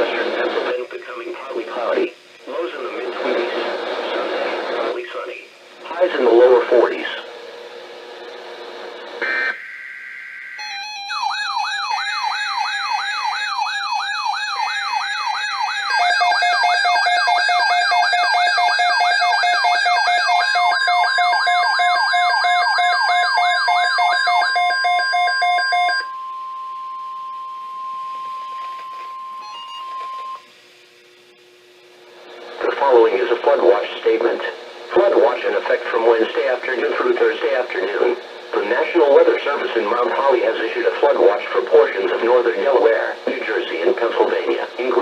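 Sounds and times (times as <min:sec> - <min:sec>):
fast-wailing electronic sirens: 0:09.2 - 0:26.1.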